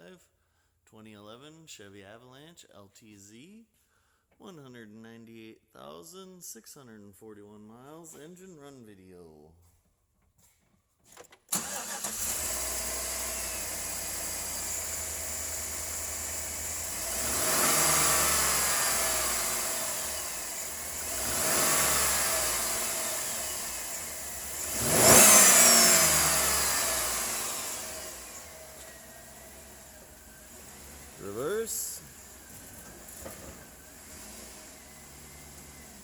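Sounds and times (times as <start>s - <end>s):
car engine idling and revving: 11.6s - 36.0s.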